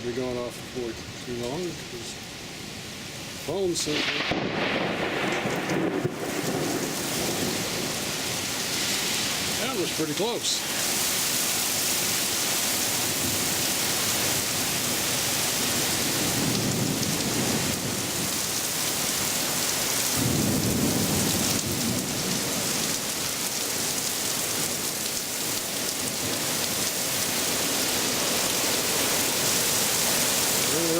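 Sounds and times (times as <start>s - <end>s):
steady heavy rain: 0.0s - 30.9s
low rolls of thunder: 3.8s - 9.7s, 16.0s - 18.6s, 20.1s - 24.0s.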